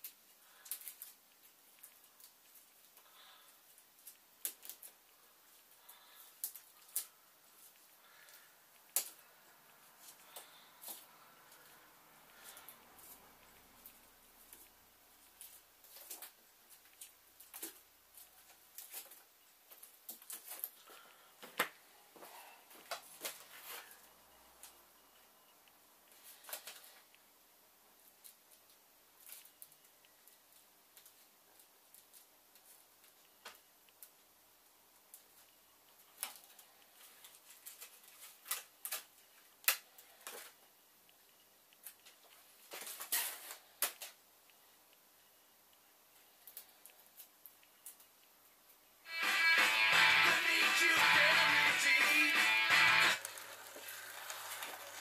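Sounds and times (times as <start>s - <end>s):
small objects clicking and rustling: 53.1s - 55.0s.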